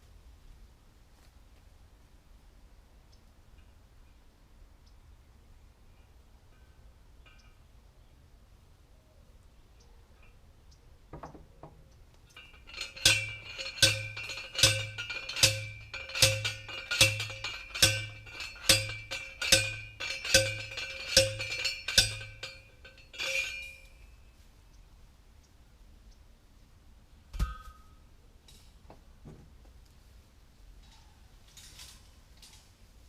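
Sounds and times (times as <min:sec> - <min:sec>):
post driver clanking on metal post: 0:11.2 - 0:23.8.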